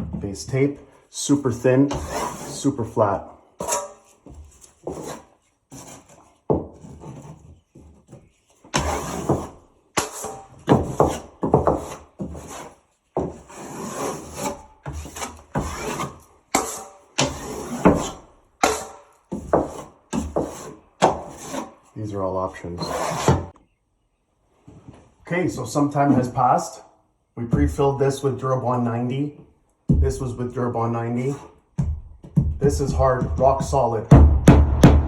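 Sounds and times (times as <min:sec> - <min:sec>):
drywall knife scraping: 0:01.3 - 0:22.0, 0:22.6 - 0:23.6, 0:31.2 - 0:31.6.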